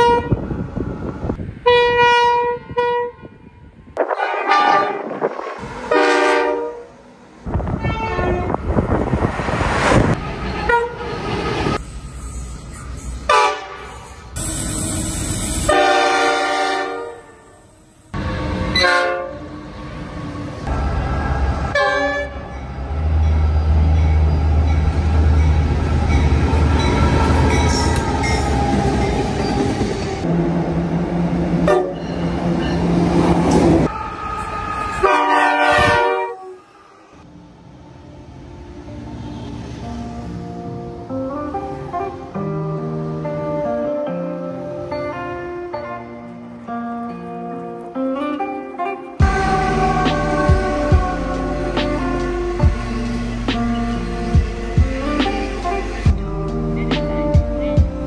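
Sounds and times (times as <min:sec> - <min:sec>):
train horn chords: 0:00.0 - 0:00.5, 0:01.6 - 0:09.0, 0:10.6 - 0:11.2, 0:13.3 - 0:19.5, 0:21.7 - 0:22.6, 0:31.6 - 0:32.1, 0:33.9 - 0:37.3, 0:48.2 - 0:56.4
diesel locomotive engine drone: 0:00.0 - 0:46.7, 0:48.9 - 0:58.0
trains running on rails: 0:00.0 - 0:47.2, 0:48.7 - 0:58.0.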